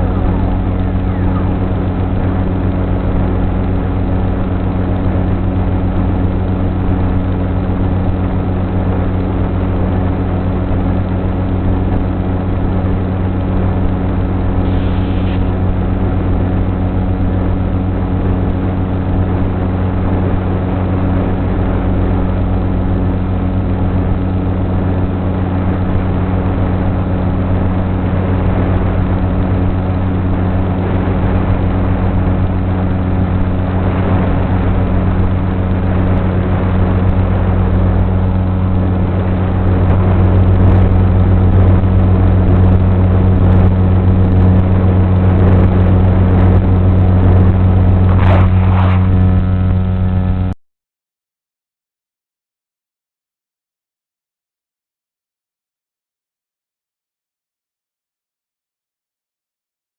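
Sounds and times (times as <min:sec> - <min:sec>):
electric motor and propeller drone: 0:00.0 - 0:50.5
air rushing: 0:47.5 - 0:49.7.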